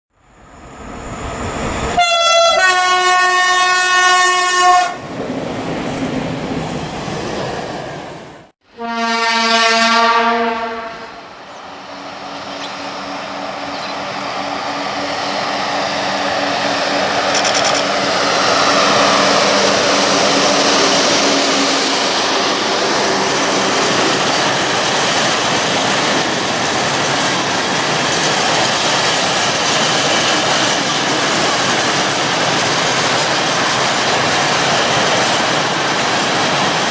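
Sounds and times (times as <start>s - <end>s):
freight train wheels rumbling: 0.2s - 8.5s, 9.1s - 36.9s
train horn blasts: 2.0s - 5.0s, 8.6s - 11.3s.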